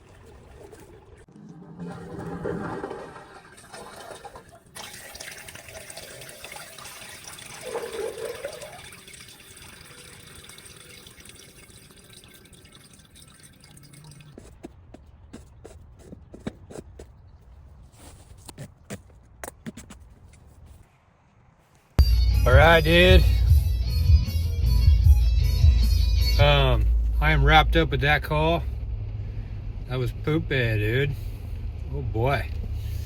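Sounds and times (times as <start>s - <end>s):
tap water running into sink: 2.8s - 14.4s.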